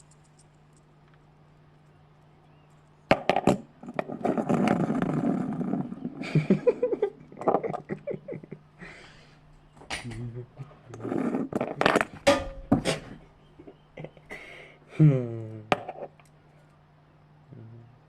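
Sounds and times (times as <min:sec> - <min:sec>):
small hard parts clicking: 0:00.0 - 0:06.2
parts scraping and rattling: 0:00.0 - 0:08.1, 0:09.4 - 0:14.0.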